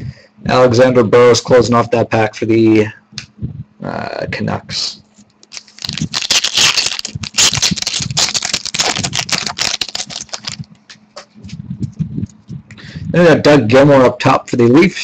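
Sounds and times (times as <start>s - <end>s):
cards crinkling and clicking: 5.3s - 10.7s
card pack wrapper tearing: 5.4s - 10.7s.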